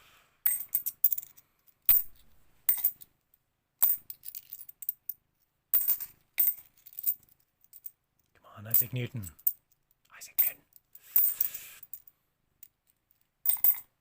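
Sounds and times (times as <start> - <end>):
coins clinking: 0.5 - 3.0, 5.8 - 7.9, 11.1 - 12.0, 13.4 - 13.9.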